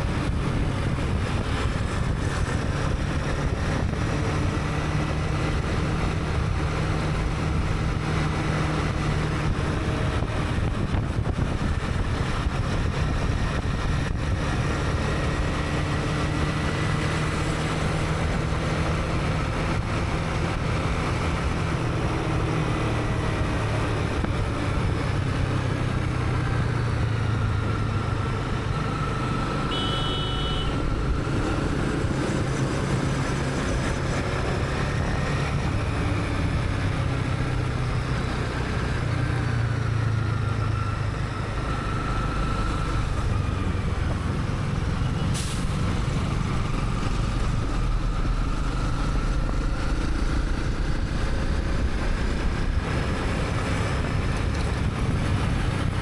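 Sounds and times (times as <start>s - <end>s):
city traffic: 0.0s - 56.0s
short high beep: 29.7s - 30.8s.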